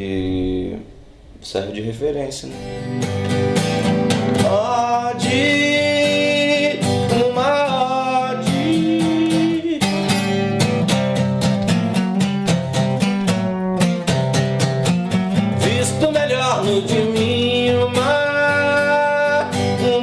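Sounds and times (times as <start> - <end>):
acoustic guitar strumming: 2.5 - 20.0
person singing: 4.3 - 10.6, 15.5 - 20.0.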